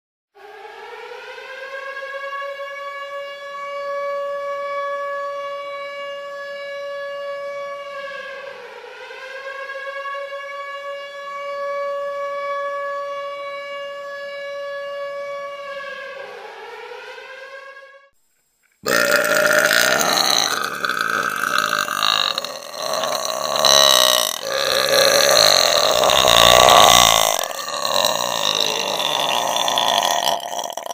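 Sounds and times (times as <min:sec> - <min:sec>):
woman belching: 0:18.8 - 0:30.9
siren wailing: 0:20.4 - 0:30.6.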